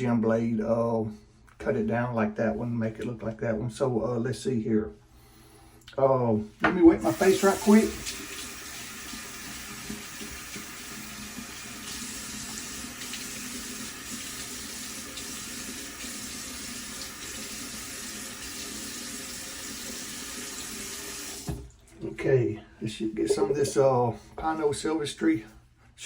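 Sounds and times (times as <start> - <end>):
water running from sink tap: 7.0 - 21.8.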